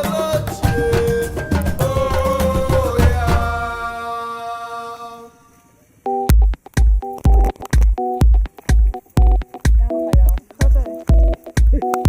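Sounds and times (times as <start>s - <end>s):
steady kick drum: 0.0s - 3.8s, 6.3s - 12.0s
electronic music: 0.0s - 4.0s, 6.1s - 12.0s.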